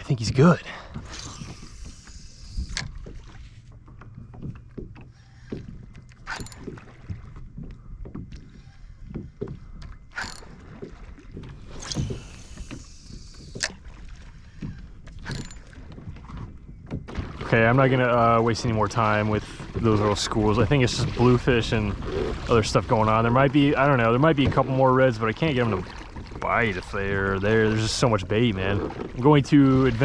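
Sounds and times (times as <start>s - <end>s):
water lapping against hull: 0.0s - 30.0s
sharp water splashes: 17.1s - 30.0s.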